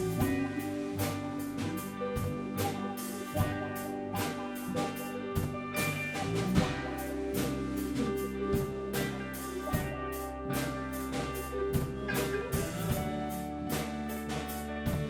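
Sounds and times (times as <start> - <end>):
drum kit steady beat: 0.0 - 15.0
ska rock band playing: 0.0 - 15.0.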